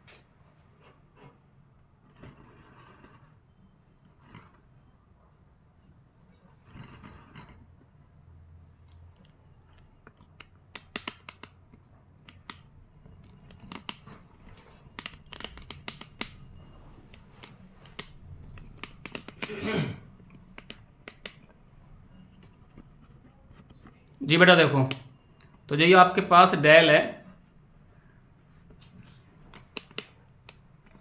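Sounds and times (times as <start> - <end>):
scratchy writing strokes: 0.6 - 1.4.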